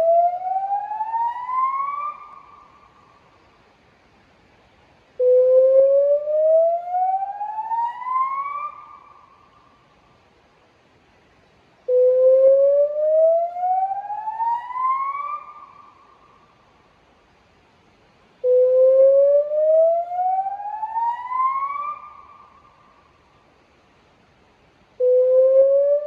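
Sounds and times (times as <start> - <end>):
rising warning siren whoops: 0.0 - 2.3, 5.7 - 9.0, 12.6 - 15.7, 19.2 - 22.2.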